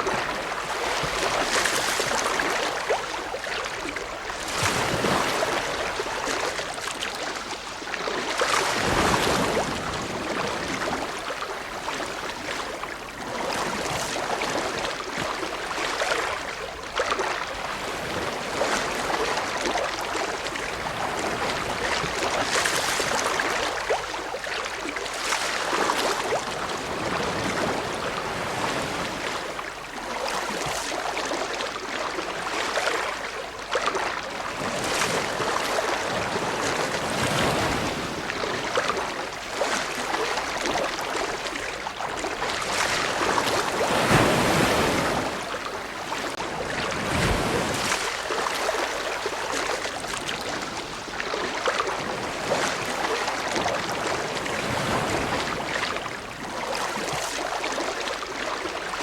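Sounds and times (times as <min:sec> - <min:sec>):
ocean waves breaking: 0:00.0 - 0:07.5, 0:08.2 - 0:16.3, 0:25.1 - 0:29.6, 0:34.3 - 0:58.4.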